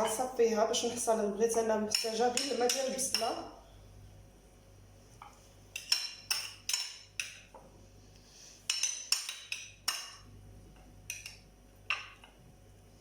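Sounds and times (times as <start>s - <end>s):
utensils clinking against strainer: 1.9s - 3.5s.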